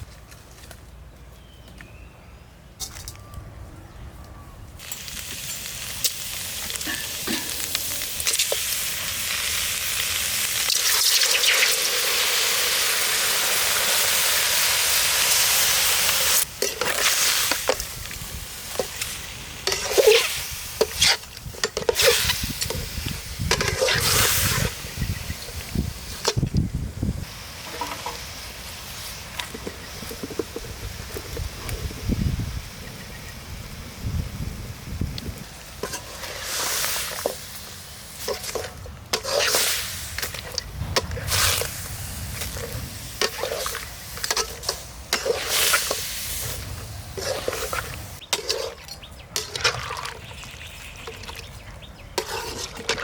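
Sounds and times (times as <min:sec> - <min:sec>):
food sizzling in a pan: 0:04.8 - 0:21.2
stirring knocks and scrapes in pan: 0:52.1 - 0:53.0.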